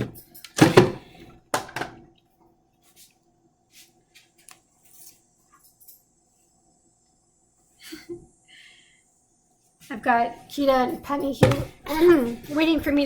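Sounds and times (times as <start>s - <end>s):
knocks on kitchen counter: 11.4s - 11.8s.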